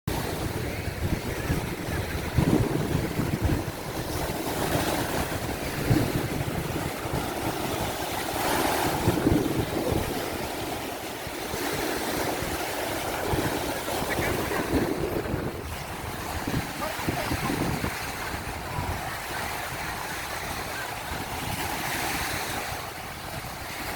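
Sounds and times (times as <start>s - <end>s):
ocean surf washing in: 0.1s - 23.9s
wind rumbling on microphone: 0.1s - 23.9s.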